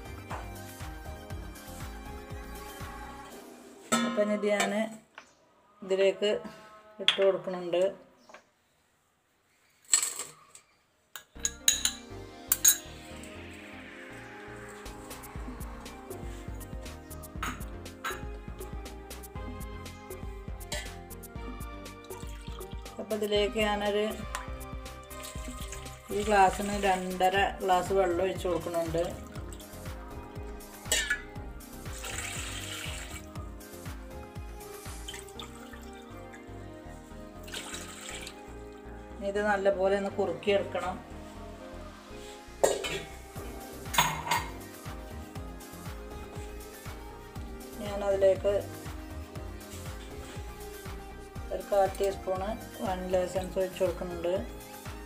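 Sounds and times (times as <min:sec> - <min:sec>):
background music: 0:00.0 - 0:07.9, 0:11.2 - 0:55.0
water pouring into a bowl: 0:22.0 - 0:22.9, 0:25.0 - 0:30.0, 0:31.8 - 0:33.3, 0:34.8 - 0:36.1, 0:37.4 - 0:38.5.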